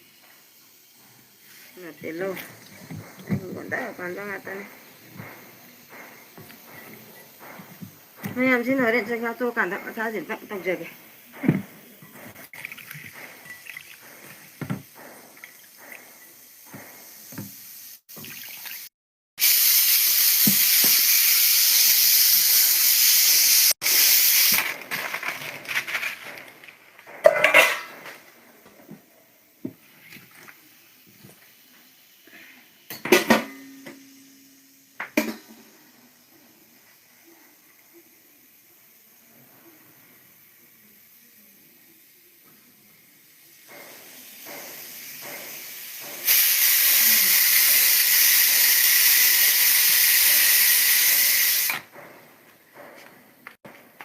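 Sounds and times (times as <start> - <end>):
dishes clattering: 25.0 - 28.2.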